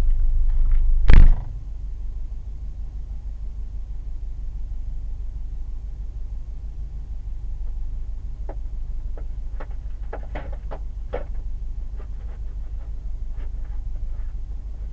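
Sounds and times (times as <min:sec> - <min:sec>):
car driving on ice rumble: 0:00.0 - 0:14.9
sharp knocks from car: 0:08.4 - 0:13.8.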